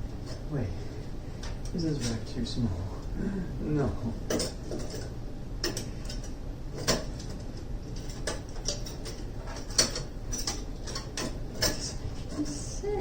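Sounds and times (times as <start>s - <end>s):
hard parts clicking and clinking: 4.2s - 7.4s, 8.0s - 12.6s.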